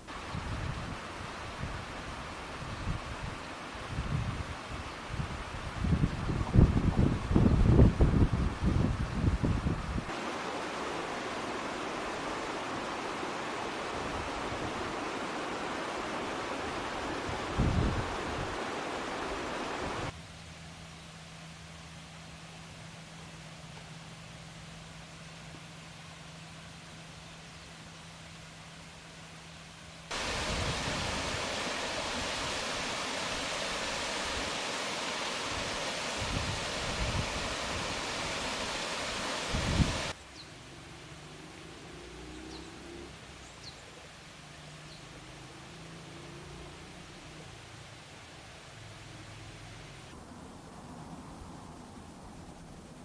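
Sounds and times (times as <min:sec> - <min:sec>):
water rushing: 0:00.0 - 0:08.8, 0:09.4 - 0:20.2, 0:30.1 - 0:52.4
wind buffeting microphone: 0:05.1 - 0:10.1, 0:17.1 - 0:18.6, 0:30.1 - 0:32.7, 0:35.4 - 0:38.5, 0:39.4 - 0:40.1.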